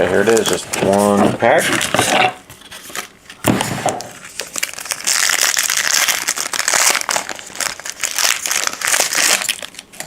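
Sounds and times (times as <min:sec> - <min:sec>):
card pack wrapper tearing and crinkling: 0:04.0 - 0:10.0.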